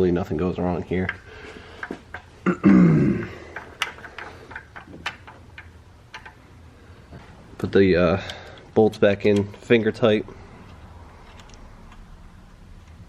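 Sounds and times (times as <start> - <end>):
man grunting: 2.5 - 3.4.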